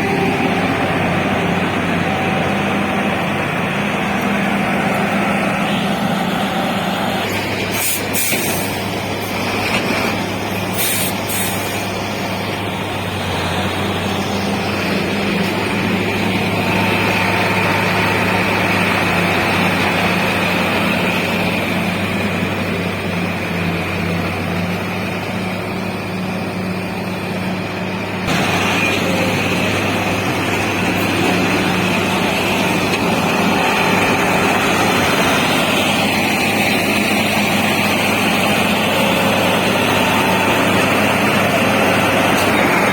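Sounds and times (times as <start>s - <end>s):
diesel engines low hum: 0.0s - 42.9s
high machinery whine: 27.1s - 42.9s.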